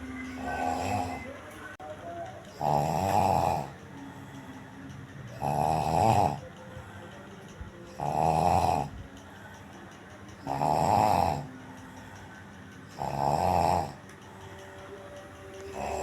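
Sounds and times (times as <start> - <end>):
person snoring: 0.0 - 1.8, 2.5 - 4.7, 5.3 - 7.0, 7.9 - 9.0, 10.3 - 14.7, 15.6 - 16.0.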